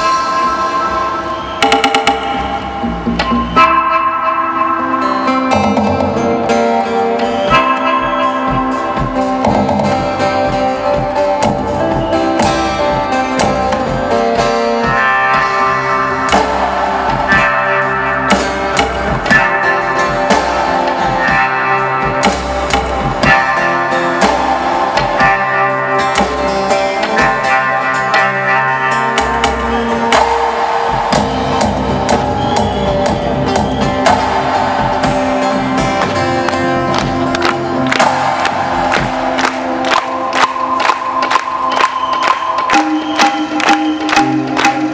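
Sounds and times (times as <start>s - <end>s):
live instrumental music: 0.0s - 44.9s
drum hits: 30.1s - 40.1s
plucked strings: 30.2s - 41.9s.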